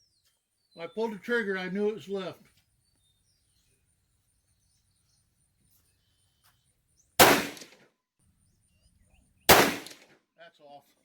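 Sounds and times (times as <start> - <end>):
rifle shot: 7.2 - 7.8, 9.5 - 10.1.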